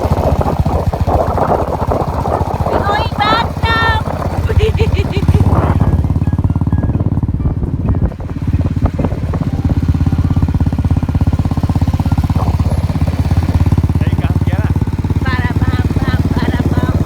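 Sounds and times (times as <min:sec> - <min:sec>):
vehicle engine running: 0:00.0 - 0:17.0.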